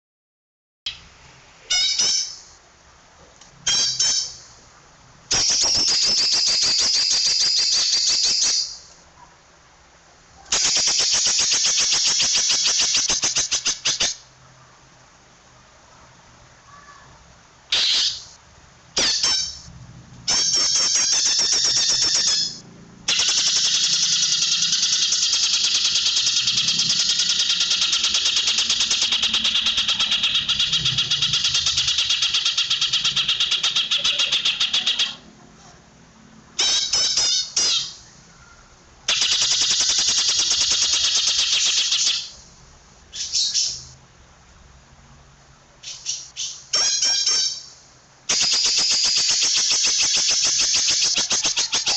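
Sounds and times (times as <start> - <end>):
bird singing rapid high notes: 1.7 - 2.6, 3.7 - 4.6, 5.3 - 8.9, 17.7 - 18.4, 19.0 - 19.7, 20.3 - 35.2, 36.6 - 42.4, 45.8 - 51.9.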